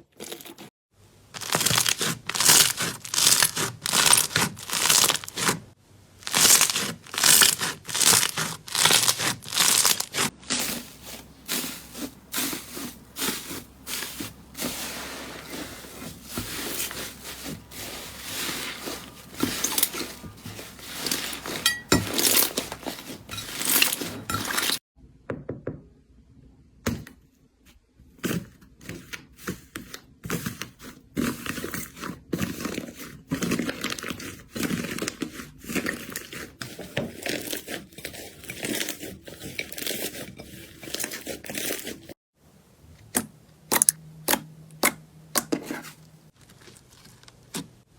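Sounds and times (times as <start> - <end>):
hands squishing slime: 1.4 - 24.8.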